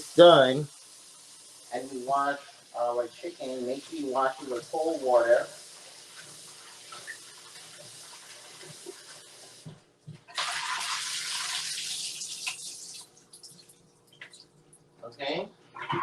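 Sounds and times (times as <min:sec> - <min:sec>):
tap water running into sink: 0:04.4 - 0:14.5.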